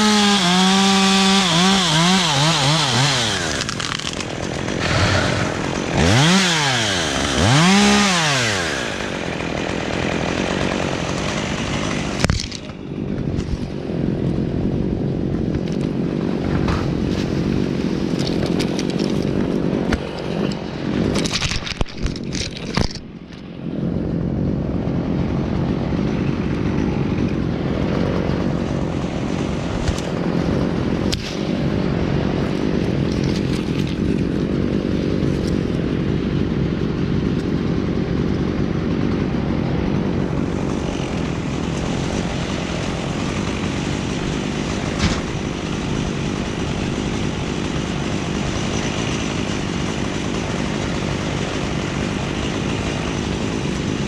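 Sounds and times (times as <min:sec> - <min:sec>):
chainsaw running: 0:00.0 - 0:54.0
sharp cracks: 0:02.7 - 0:12.8.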